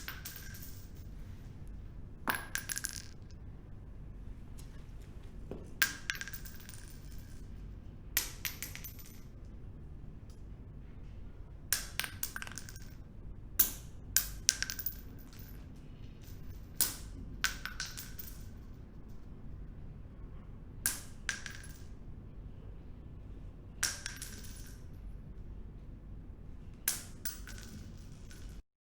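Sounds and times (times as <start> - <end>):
metal bullets clinking on hard surface: 0.0 - 1.2, 2.3 - 3.4, 5.8 - 7.5, 8.2 - 9.4, 11.7 - 13.0, 13.6 - 19.2, 20.9 - 22.0, 23.8 - 25.0, 26.8 - 28.6.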